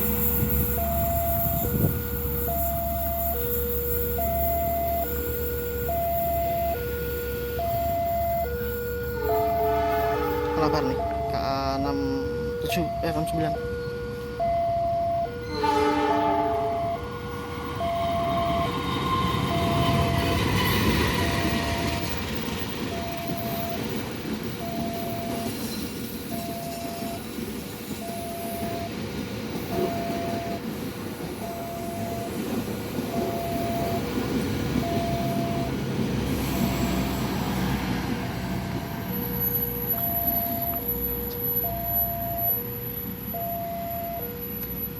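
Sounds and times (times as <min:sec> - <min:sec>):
train wheels rumbling on rail: 0:00.0 - 0:44.9
train horn blast: 0:07.4 - 0:11.0, 0:15.4 - 0:22.0.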